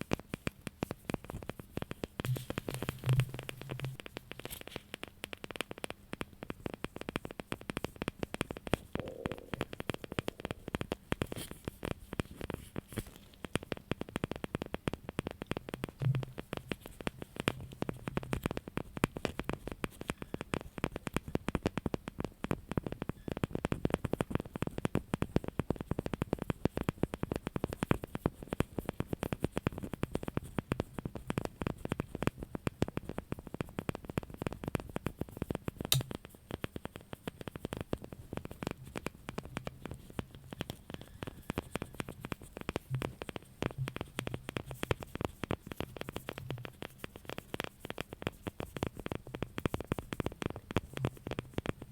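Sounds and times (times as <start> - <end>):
fingers tapping and scratching: 0.0 - 51.9.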